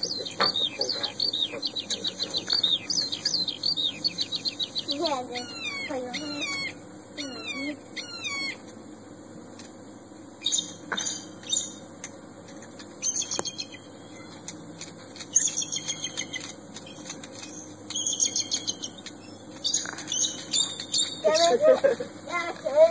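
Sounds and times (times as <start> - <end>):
small bird trilled chirps: 0.0 - 8.6, 10.4 - 11.8, 13.0 - 14.5, 15.2 - 21.6
steady high hiss: 0.0 - 22.9.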